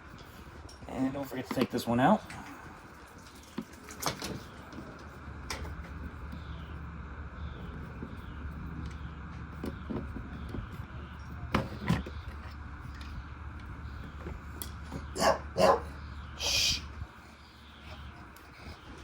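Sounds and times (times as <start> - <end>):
steady low hum: 0.0 - 19.0
dog barking: 15.1 - 16.0.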